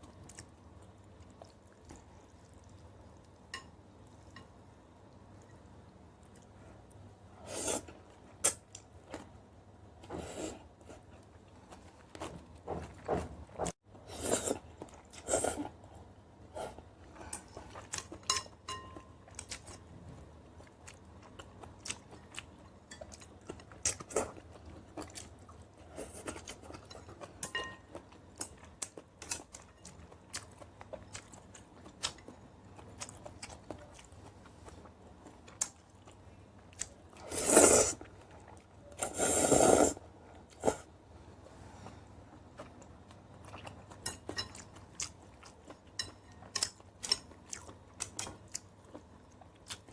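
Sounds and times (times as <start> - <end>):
person chewing and crunching food: 17.0 - 40.8, 41.8 - 49.9.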